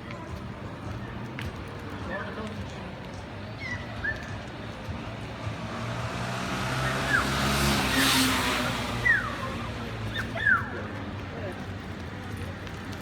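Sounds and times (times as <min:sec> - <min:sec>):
car passing by: 0:05.2 - 0:09.9.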